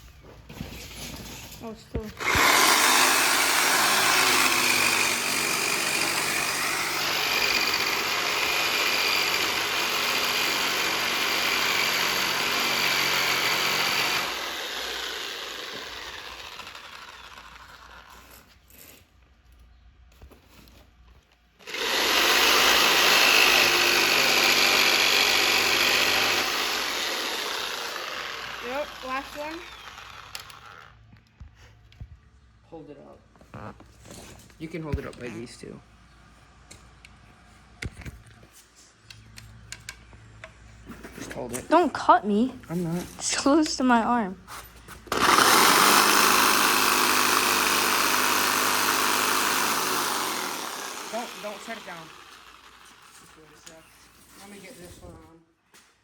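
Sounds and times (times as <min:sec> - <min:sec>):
power saw cutting wood: 0:02.0 - 0:18.5, 0:21.6 - 0:30.9, 0:45.1 - 0:54.8.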